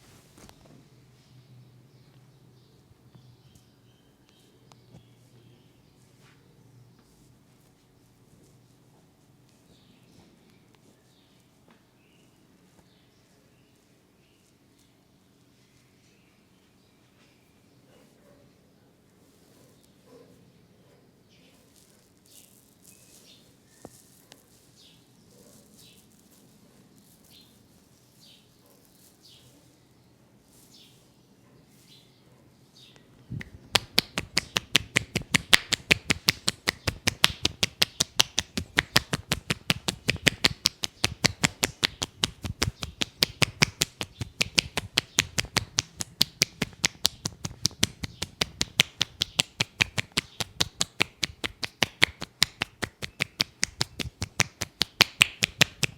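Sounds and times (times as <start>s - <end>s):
soft rubbing strokes on head: 0.0s - 1.2s, 4.4s - 18.2s, 19.1s - 20.5s, 21.4s - 32.8s, 33.4s - 55.9s
hand slaps on head: 33.4s - 55.9s.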